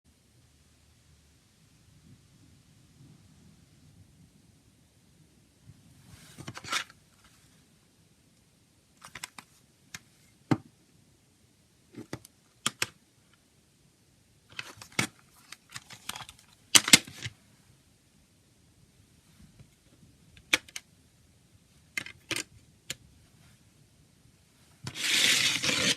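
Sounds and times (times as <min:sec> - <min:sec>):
plastic case clicks and snaps: 0:12.0 - 0:13.0, 0:14.6 - 0:17.3, 0:20.4 - 0:20.8.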